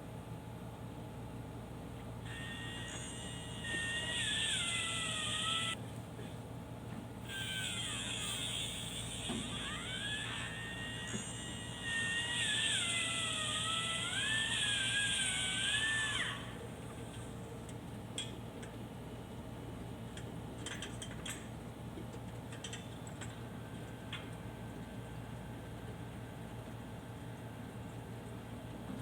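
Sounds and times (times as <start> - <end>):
angle grinder whining: 2.3 - 5.8, 7.3 - 16.6.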